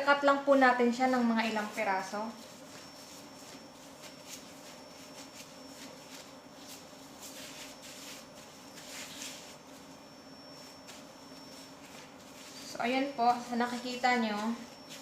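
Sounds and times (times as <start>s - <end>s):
dough rustling and scraping: 0.0s - 15.0s.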